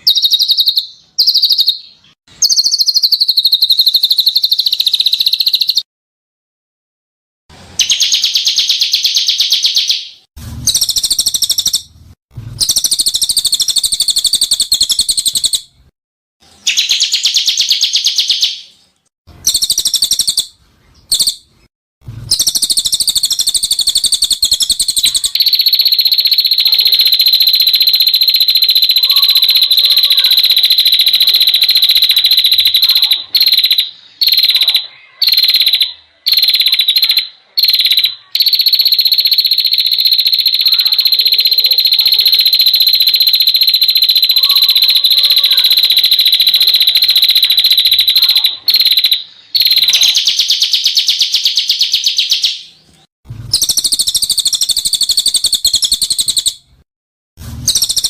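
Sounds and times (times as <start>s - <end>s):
bird high trills: 22.3s - 52.6s.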